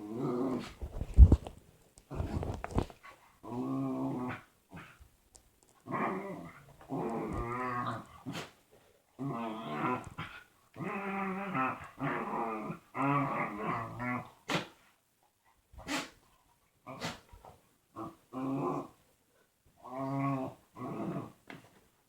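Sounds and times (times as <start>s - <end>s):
dog making growl-like noises: 0.0s - 0.8s, 3.4s - 5.0s, 5.8s - 8.5s, 9.2s - 14.7s, 16.9s - 17.3s, 18.0s - 19.0s, 19.8s - 21.4s.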